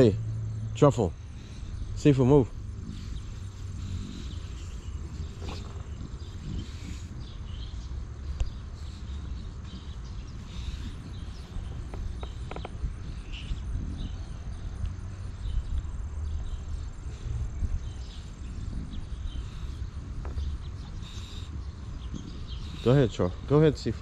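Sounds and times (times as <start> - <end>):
faint insect drone: 0.0 - 24.0
wind rumble on microphone: 1.4 - 24.0.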